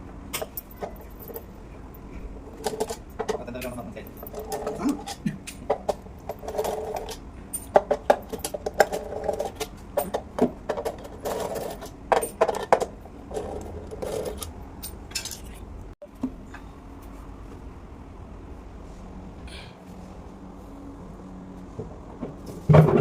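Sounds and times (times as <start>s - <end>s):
hard objects clicking and clattering: 2.6s - 15.6s.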